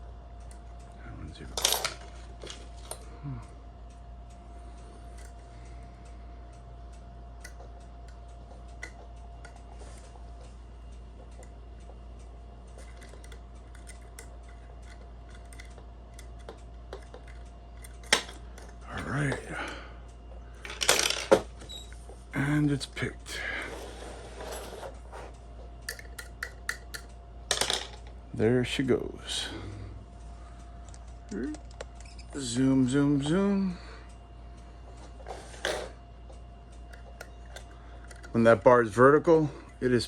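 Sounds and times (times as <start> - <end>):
lock picks clicking in lock: 25.9 - 27.1.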